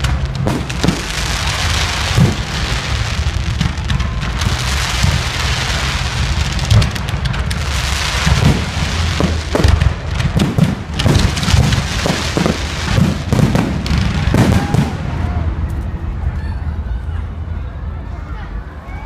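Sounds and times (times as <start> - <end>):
fireworks loud bangs: 0.0 - 15.7
fireworks crackling: 0.0 - 16.0.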